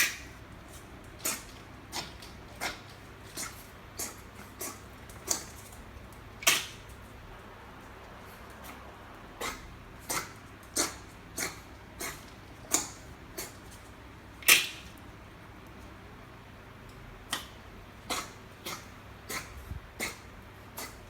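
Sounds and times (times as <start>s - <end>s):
puppy coughing: 1.2s - 5.6s, 6.4s - 6.8s, 8.6s - 13.7s, 14.4s - 14.9s, 17.3s - 21.0s.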